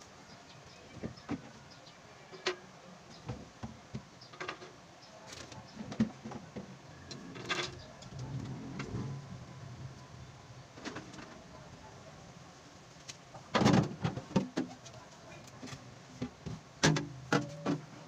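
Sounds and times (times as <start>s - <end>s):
knocks and clatter of handled things: 3.2s - 9.2s, 13.4s - 17.9s.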